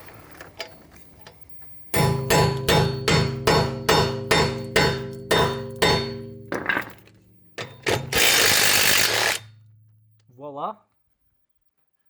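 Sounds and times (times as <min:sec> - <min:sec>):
hammer striking metal socket: 0:02.0 - 0:06.8, 0:07.6 - 0:10.0.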